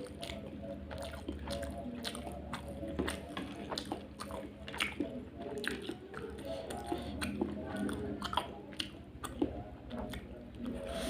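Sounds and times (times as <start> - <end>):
chewing crunchy noodles: 0.0 - 11.0.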